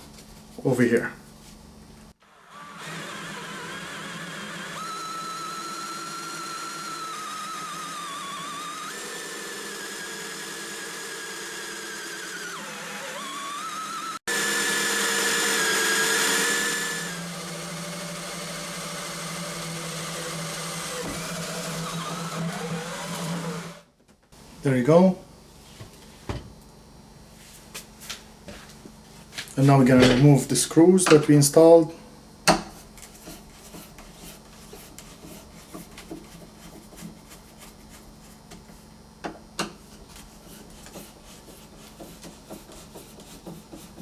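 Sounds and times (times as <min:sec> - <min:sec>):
electric drill boring wood: 0:02.2 - 0:23.9.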